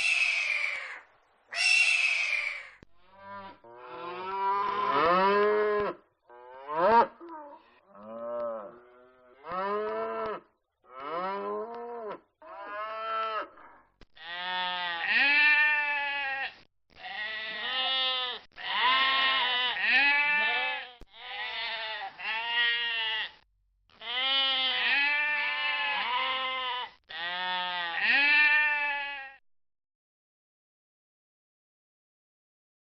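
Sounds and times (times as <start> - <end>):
sheep bleating: 0.0 - 2.8, 14.2 - 29.4.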